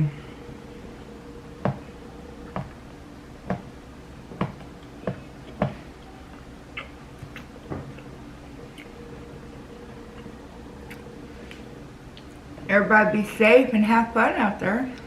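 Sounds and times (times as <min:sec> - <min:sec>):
chewing clicks: 0:08.7 - 0:09.0.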